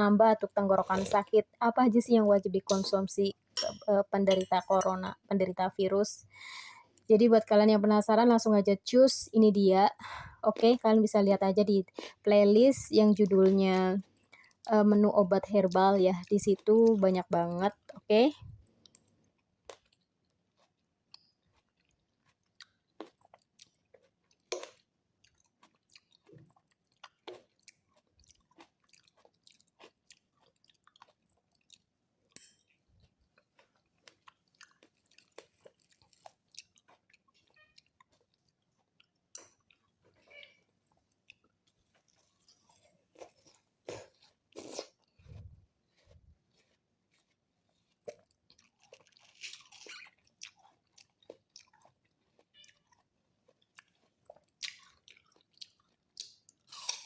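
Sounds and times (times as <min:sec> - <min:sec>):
person chewing food: 0:14.0 - 0:14.7, 0:17.7 - 0:57.0.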